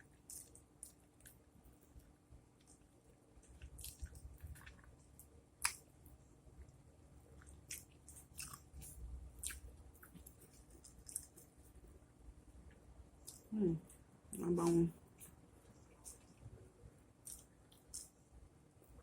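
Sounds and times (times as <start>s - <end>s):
person chewing food: 0.0s - 6.0s, 6.6s - 11.9s, 12.7s - 14.0s, 14.6s - 16.4s, 17.2s - 18.2s
wet mouth clicks: 17.2s - 18.1s.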